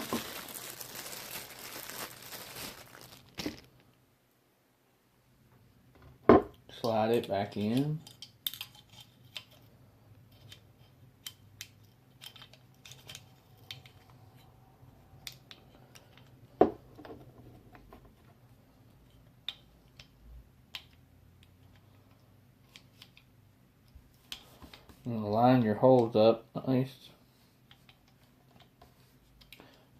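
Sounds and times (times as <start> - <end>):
small clicks and taps of parts: 10.3 - 14.5, 15.2 - 16.4, 19.0 - 25.0, 27.6 - 29.9.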